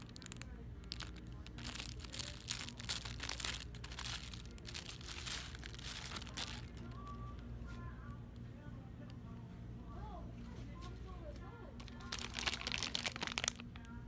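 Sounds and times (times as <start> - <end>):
crinkling and rustling: 0.0 - 7.9, 10.7 - 14.0
low steady hum: 0.0 - 14.0.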